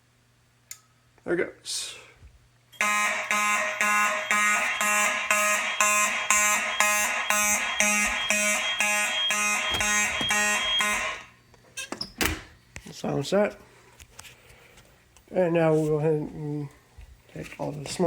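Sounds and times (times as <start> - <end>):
fire alarm horn pulsing: 2.8 - 11.3.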